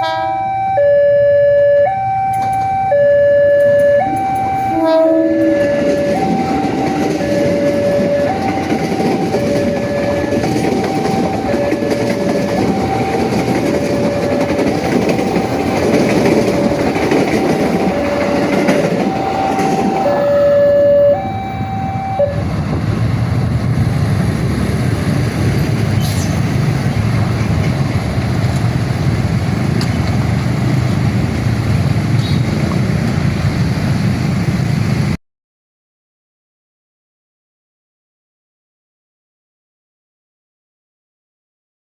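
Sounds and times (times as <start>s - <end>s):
level-crossing two-tone alarm: 0.0s - 22.4s
passing train: 0.0s - 35.2s.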